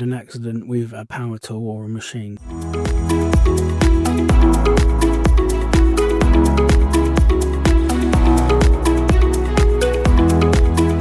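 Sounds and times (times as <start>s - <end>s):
held synth notes: 2.4s - 11.0s
kick-drum beat: 2.4s - 11.0s.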